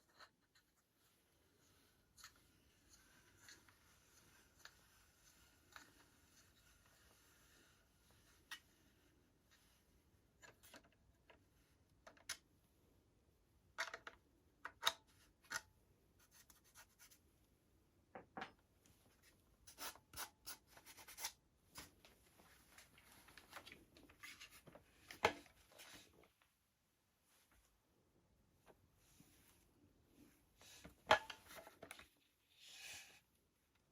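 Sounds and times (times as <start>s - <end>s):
plastic parts clicking: 13.7s - 15.7s.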